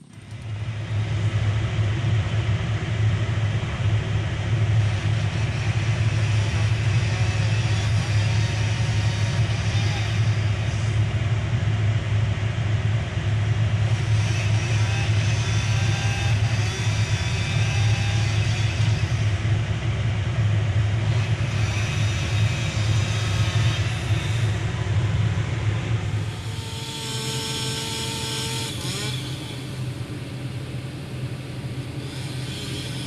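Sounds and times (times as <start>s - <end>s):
engine droning steadily: 0.0s - 33.0s.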